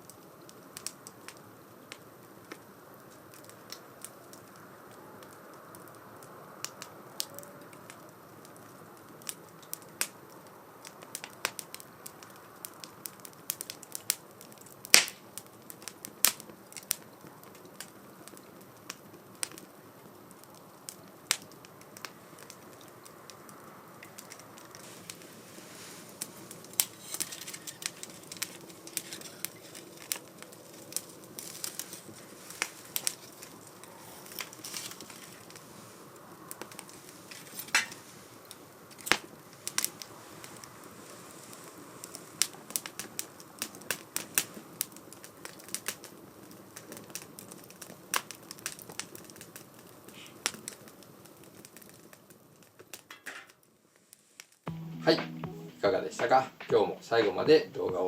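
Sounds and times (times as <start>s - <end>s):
wood fire crackling: 0.0s - 58.0s
rush of flame: 20.4s - 52.2s.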